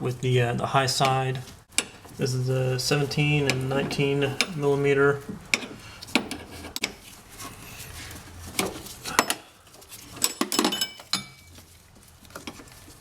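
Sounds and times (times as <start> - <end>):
wrenches clinking on metal fitting: 3.4 - 4.8, 10.2 - 11.5.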